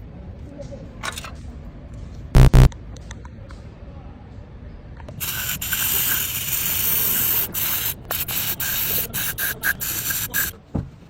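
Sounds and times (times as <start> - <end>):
pressurised spray jet hissing: 5.2 - 10.6.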